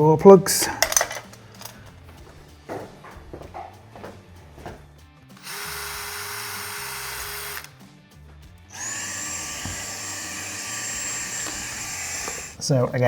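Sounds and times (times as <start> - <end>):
cordless drill running: 5.4 - 7.8, 8.7 - 12.6.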